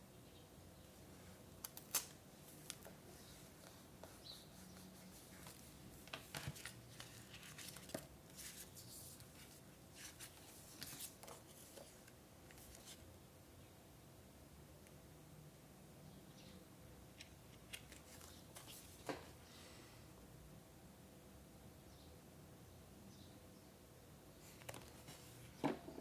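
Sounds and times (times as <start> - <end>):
paper rustling: 5.0 - 13.0.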